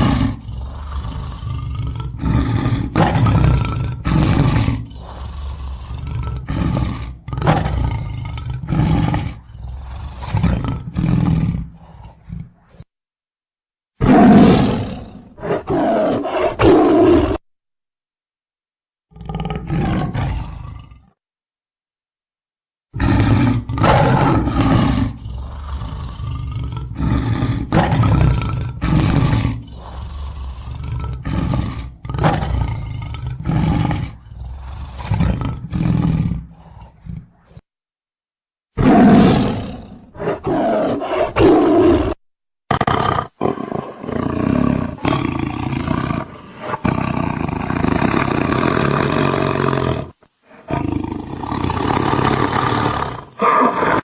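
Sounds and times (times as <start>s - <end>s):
tiger growling and roaring: 0.0s - 12.9s, 14.0s - 17.4s, 19.1s - 21.2s, 22.9s - 37.7s, 38.7s - 54.0s.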